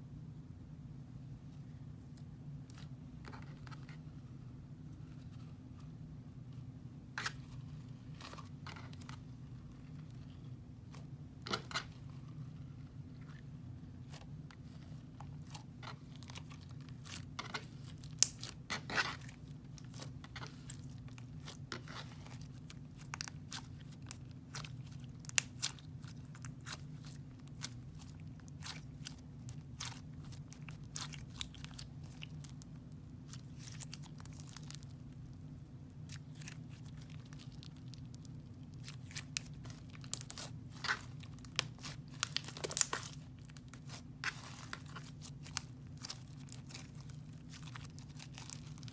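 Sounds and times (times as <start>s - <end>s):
foam beads crackling and popping: 15.4s - 35.0s, 36.2s - 48.9s.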